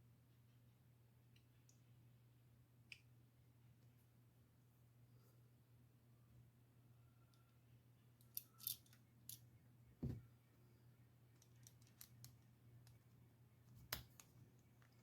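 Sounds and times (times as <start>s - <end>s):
small parts and tools clicking: 8.2s - 9.5s, 11.3s - 13.1s
dull knock: 10.0s - 10.2s.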